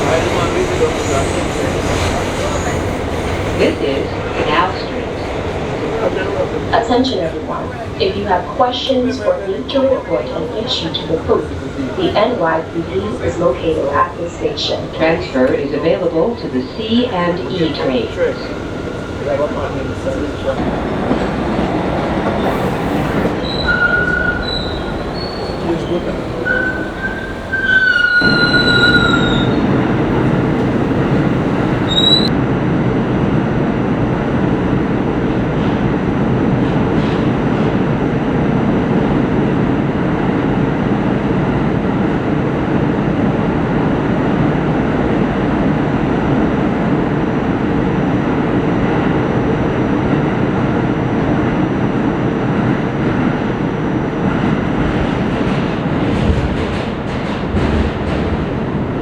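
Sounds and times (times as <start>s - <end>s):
subway train running: 0.0s - 59.0s
high wheel squeal: 17.4s - 32.3s.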